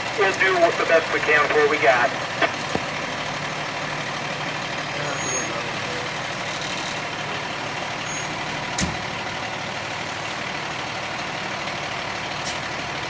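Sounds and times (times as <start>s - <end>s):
fire truck engine running: 0.0s - 13.0s.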